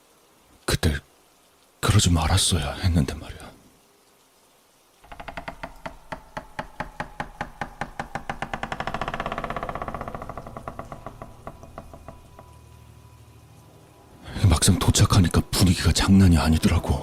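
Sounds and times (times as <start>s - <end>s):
rapid ticking clicks: 5.0s - 13.1s.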